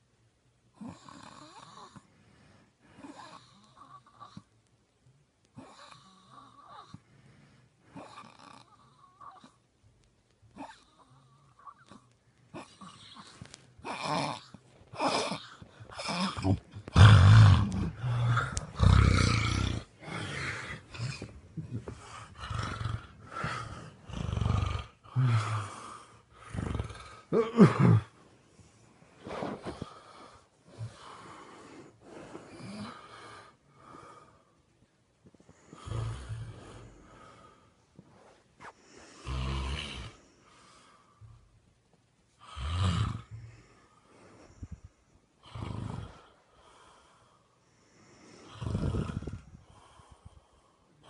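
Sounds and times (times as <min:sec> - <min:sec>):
man snoring: 0:00.8 - 0:02.0, 0:12.6 - 0:28.1, 0:35.8 - 0:37.4, 0:39.2 - 0:40.2, 0:42.4 - 0:43.4, 0:45.4 - 0:46.3, 0:48.4 - 0:49.6.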